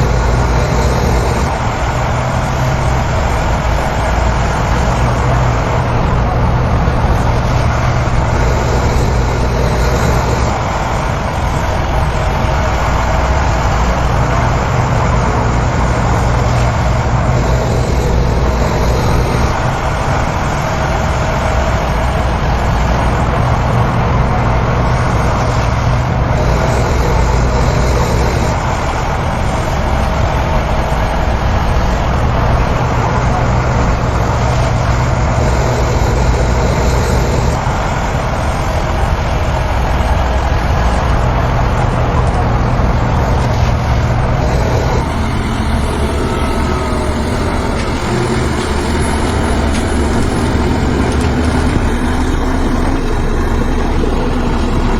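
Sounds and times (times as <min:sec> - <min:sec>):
heavy diesel engines droning: 0:00.0 - 0:54.9.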